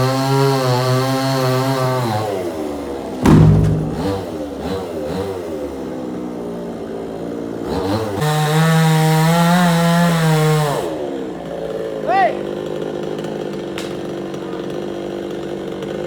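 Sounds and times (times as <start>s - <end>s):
loud knock: 3.3s - 4.3s.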